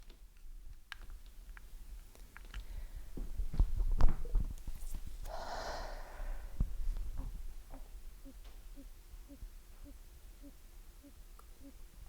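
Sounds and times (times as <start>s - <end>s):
breath-like hiss: 5.3s - 6.7s.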